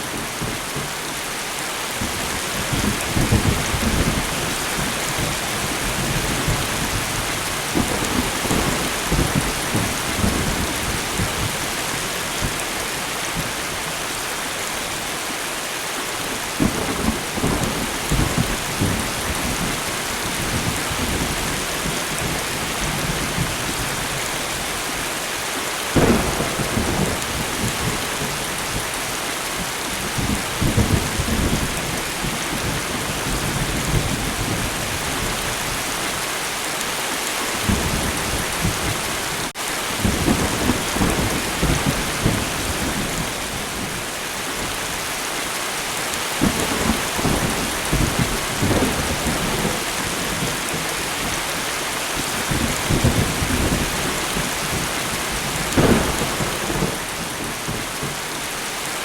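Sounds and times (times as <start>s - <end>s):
rain hiss: 0.0s - 59.0s
thunder rumbling: 2.0s - 12.6s, 25.9s - 29.1s, 37.5s - 44.0s, 46.4s - 51.4s, 52.2s - 58.2s.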